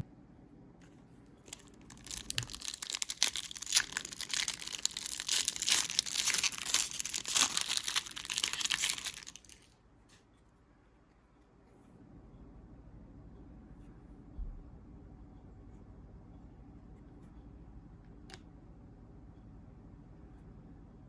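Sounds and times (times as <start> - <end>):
plastic wrapper crinkling: 1.4 - 9.7.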